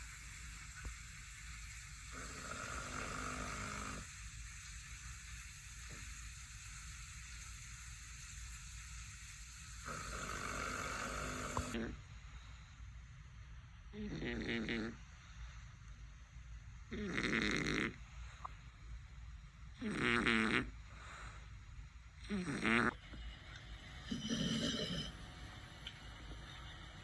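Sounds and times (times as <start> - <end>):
steady hiss: 0.0 - 27.0
puppy snoring: 1.7 - 4.2, 9.8 - 12.0, 13.9 - 15.0, 16.9 - 18.1, 19.8 - 20.8, 22.2 - 23.2, 23.8 - 27.0.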